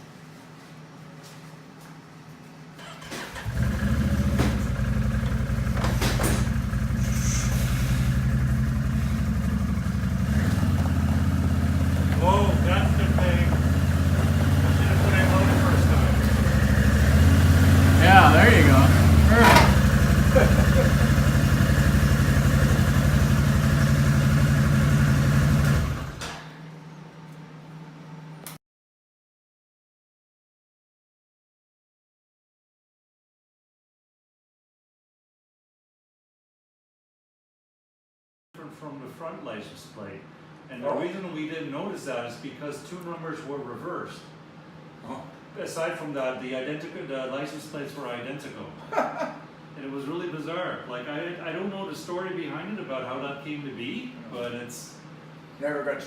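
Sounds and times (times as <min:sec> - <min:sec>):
engine click: 0:02.8 - 0:06.8, 0:19.4 - 0:20.2
motorcycle engine starting and idling: 0:02.8 - 0:26.6.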